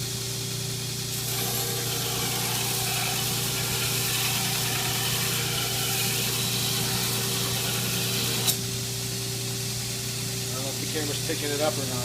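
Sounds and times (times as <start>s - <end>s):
belt grinder motor hum: 1.1s - 8.6s.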